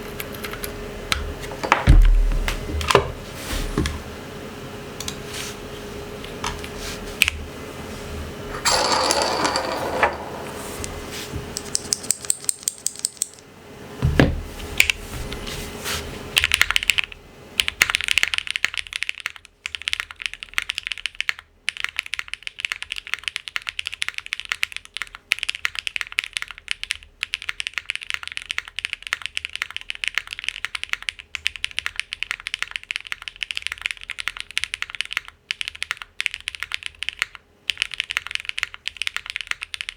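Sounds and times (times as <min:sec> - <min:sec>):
mechanical keyboard typing: 0:11.6 - 0:13.4, 0:16.4 - 0:39.9.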